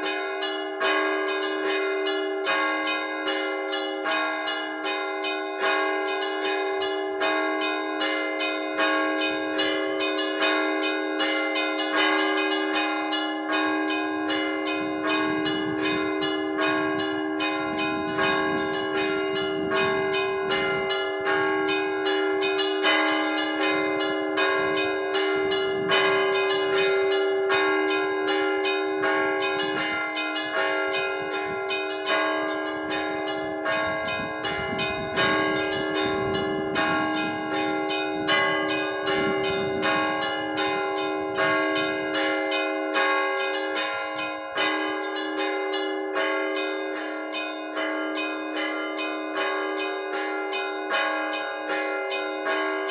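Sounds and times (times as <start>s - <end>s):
large bells ringing: 0.0s - 52.9s
small church bells striking: 0.0s - 52.9s.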